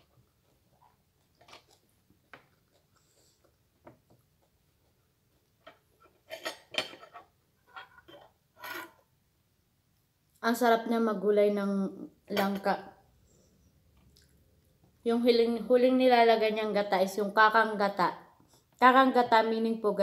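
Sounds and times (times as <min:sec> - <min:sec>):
cutlery clinking on a plate: 0:06.3 - 0:07.2.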